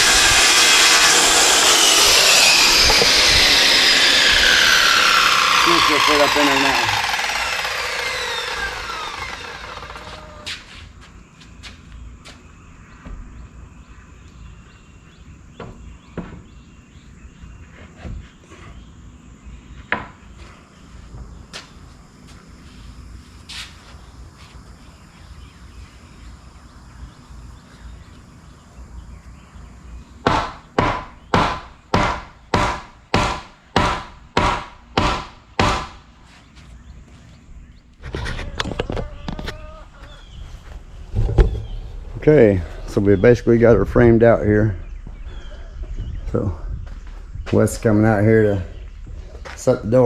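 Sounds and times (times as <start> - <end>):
hammer hitting wooden board: 30.3 - 36.0.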